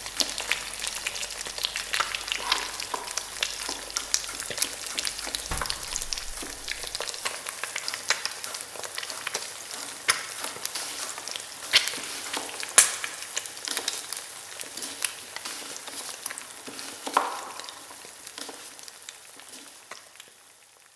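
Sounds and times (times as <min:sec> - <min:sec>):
food sizzling in a pan: 0:00.0 - 0:20.9
spitting pops: 0:05.3 - 0:07.3
loud clicks: 0:05.5 - 0:07.2.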